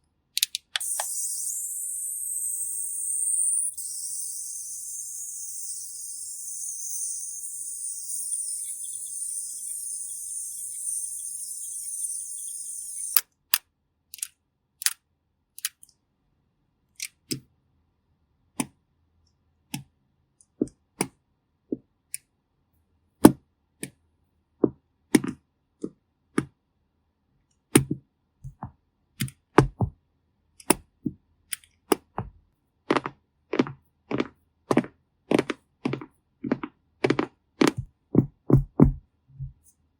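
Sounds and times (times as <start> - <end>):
high steady hiss: 0.8 - 13.2.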